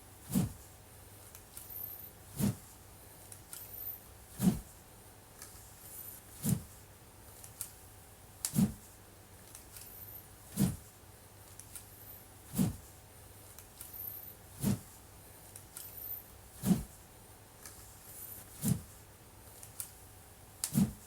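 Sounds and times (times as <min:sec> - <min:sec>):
wooden sword whooshing through air: 0:00.3 - 0:00.6, 0:02.4 - 0:02.6, 0:04.4 - 0:04.6, 0:10.6 - 0:10.8, 0:12.5 - 0:12.8, 0:14.6 - 0:14.9, 0:16.6 - 0:16.9, 0:18.6 - 0:18.9, 0:20.6 - 0:21.0.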